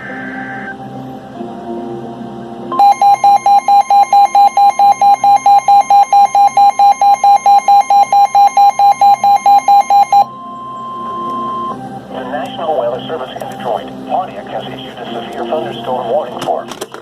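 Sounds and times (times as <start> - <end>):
steady high tone: 0.0 - 16.4
rapid electronic alarm beeping: 2.7 - 11.8.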